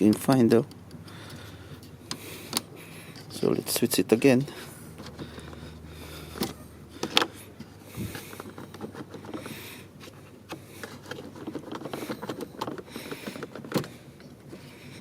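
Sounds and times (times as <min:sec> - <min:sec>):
small clicks and rattles: 0:10.4 - 0:14.6.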